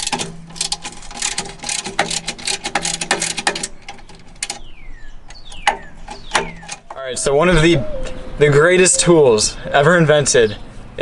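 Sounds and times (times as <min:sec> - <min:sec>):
hand ratchet clicking: 0:00.0 - 0:04.7, 0:05.3 - 0:06.9
short falling squeaks: 0:05.3 - 0:08.3.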